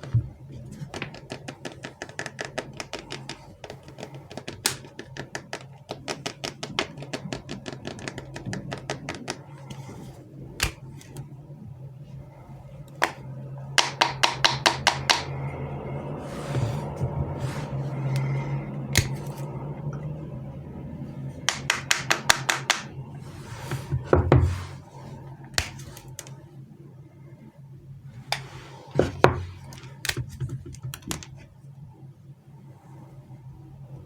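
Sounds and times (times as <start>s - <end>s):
packaging clicks and taps: 0.0s - 9.8s, 21.5s - 22.9s, 29.1s - 31.4s
low steady hum: 0.0s - 34.0s.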